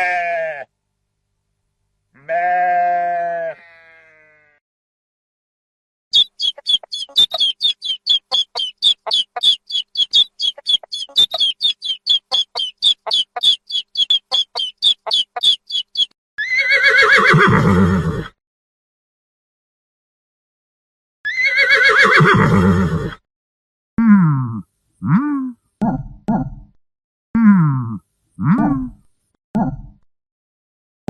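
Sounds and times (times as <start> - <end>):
sheep bleating: 0.0 - 0.7, 2.2 - 4.6
short sharp high chirps: 6.1 - 16.1
horse whinnying: 16.4 - 18.3, 21.3 - 23.2.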